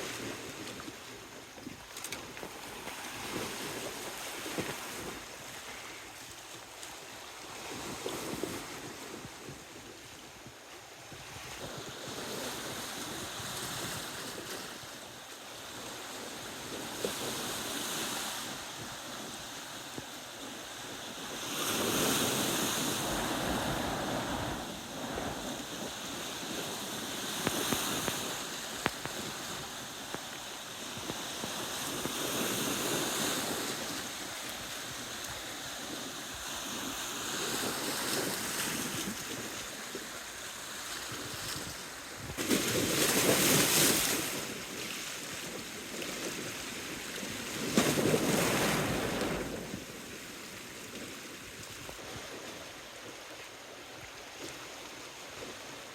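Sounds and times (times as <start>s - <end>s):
small waves washing on shore: 0.0s - 55.9s
gusty wind: 20.9s - 44.8s.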